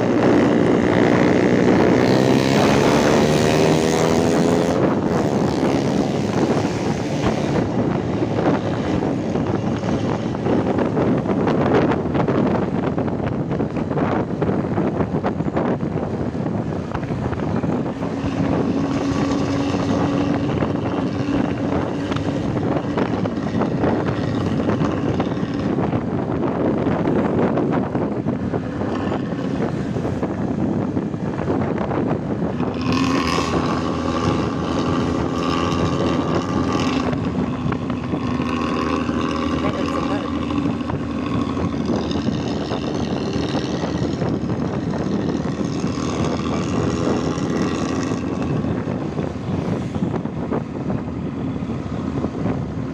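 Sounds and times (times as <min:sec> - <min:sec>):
bus diesel engine growling: 0:00.0 - 0:52.9.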